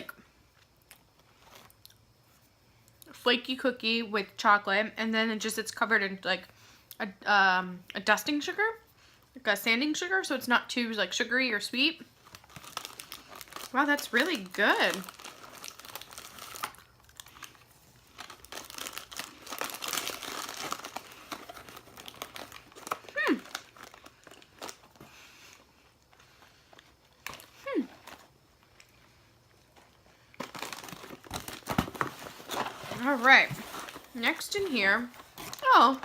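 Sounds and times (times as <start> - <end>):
plastic packaging crinkling: 12.1 - 36.0.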